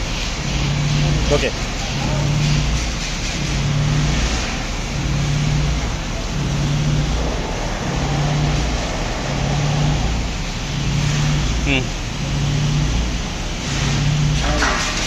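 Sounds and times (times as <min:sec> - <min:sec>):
machinery rushing noise: 0:00.0 - 0:15.0
pulsing low hum: 0:03.6 - 0:14.4.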